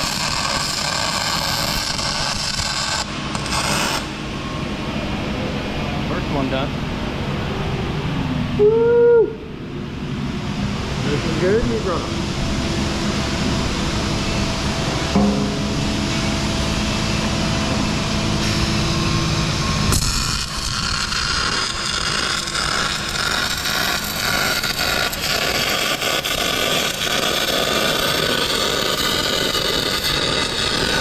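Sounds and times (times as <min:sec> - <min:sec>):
power tool working metal: 0:00.0 - 0:04.2, 0:11.3 - 0:31.0
machine hum: 0:00.0 - 0:31.0.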